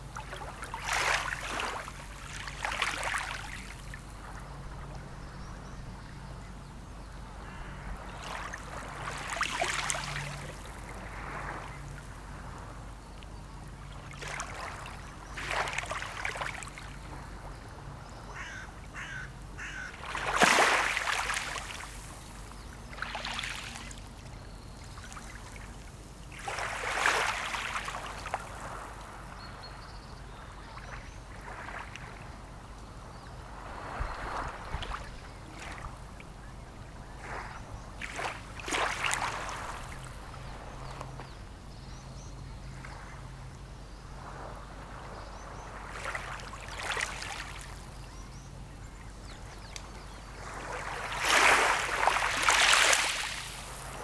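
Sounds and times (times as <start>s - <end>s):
sea ambience: 0.0s - 54.0s
birds cawing: 7.4s - 8.0s, 18.3s - 20.6s.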